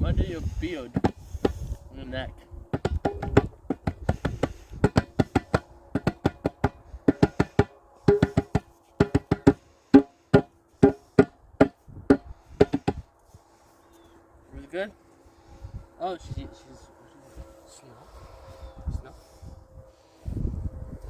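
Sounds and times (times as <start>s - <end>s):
sharp clicks and knocks: 2.7s - 13.0s.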